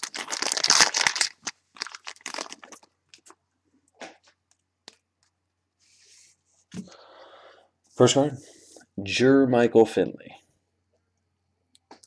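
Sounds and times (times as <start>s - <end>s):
packaging tearing and crackling: 0.0s - 3.3s.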